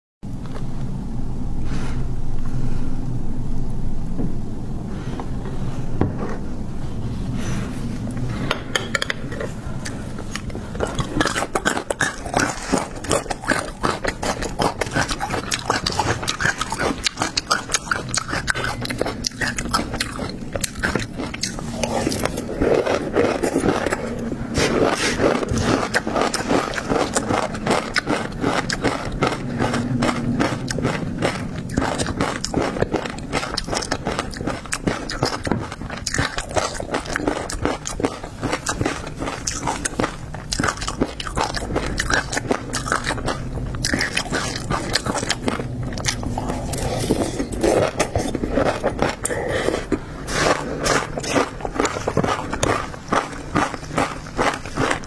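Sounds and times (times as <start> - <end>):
crunchy biting and chewing: 6.9 - 55.0.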